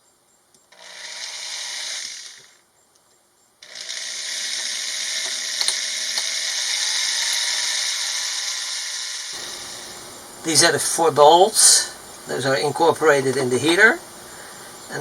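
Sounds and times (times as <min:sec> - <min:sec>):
electric power drill running: 0:00.7 - 0:02.6, 0:03.6 - 0:09.8.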